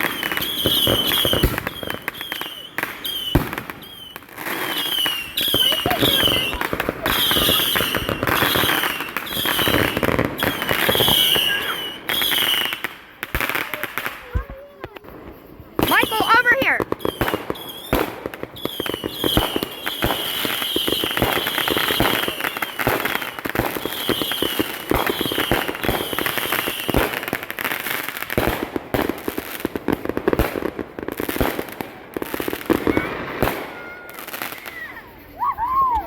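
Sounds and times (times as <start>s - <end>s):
fireworks crackling and popping: 0.0s - 36.0s
high warbling whistle: 7.2s - 12.9s.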